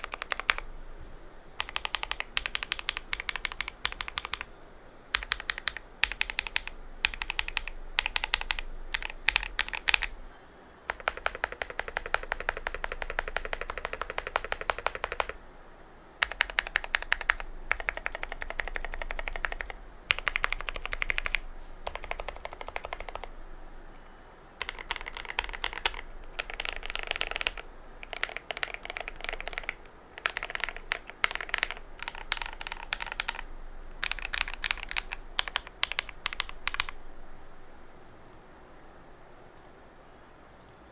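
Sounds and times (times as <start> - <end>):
mechanical keyboard typing: 0.0 - 0.7, 1.6 - 4.5, 5.1 - 10.3, 10.9 - 15.4, 16.2 - 23.4, 24.6 - 37.0.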